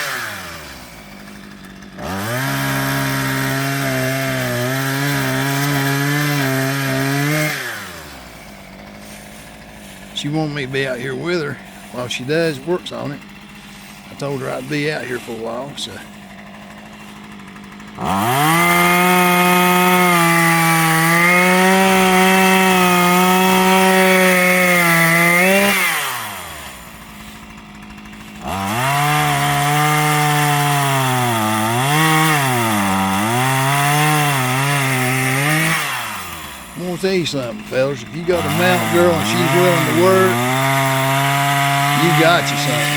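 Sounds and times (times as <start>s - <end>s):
chainsaw revving and cutting wood: 0.0s - 42.9s.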